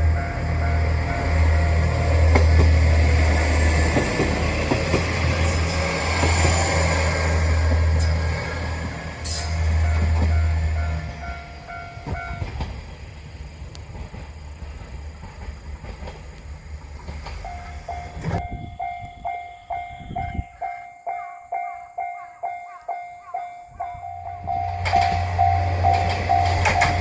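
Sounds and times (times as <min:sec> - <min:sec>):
train rumbling and clattering: 0:00.0 - 0:27.0
level crossing bell ringing: 0:17.9 - 0:27.0.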